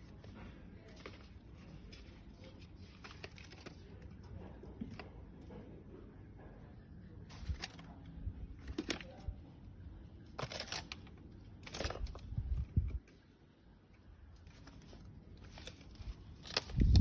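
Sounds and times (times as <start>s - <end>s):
packaging crinkling: 0.8s - 4.0s, 10.3s - 13.2s, 14.3s - 17.0s.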